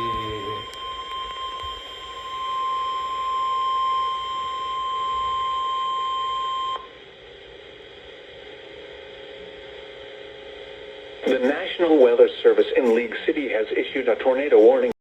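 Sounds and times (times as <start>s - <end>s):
high-pitched warning beep: 0.0s - 6.8s
faint radio hiss: 7.1s - 15.0s.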